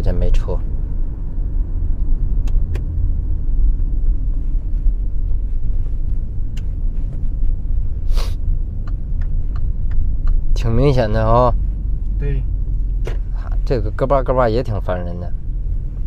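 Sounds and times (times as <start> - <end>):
road and engine rumble: 0.0 - 16.0
sharp creaking clicks: 8.8 - 10.4.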